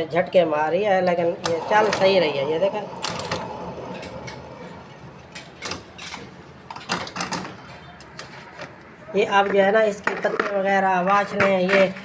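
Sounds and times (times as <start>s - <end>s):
faint electric motor hum: 0.6s - 6.8s.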